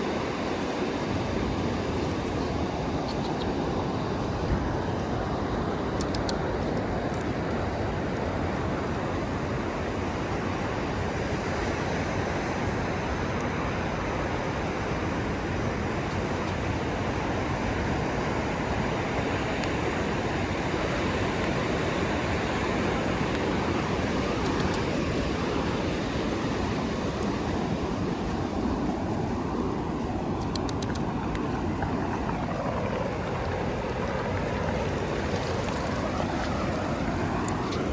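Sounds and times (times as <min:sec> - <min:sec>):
ocean surf: 0:00.0 - 0:37.9
wind: 0:00.0 - 0:37.9.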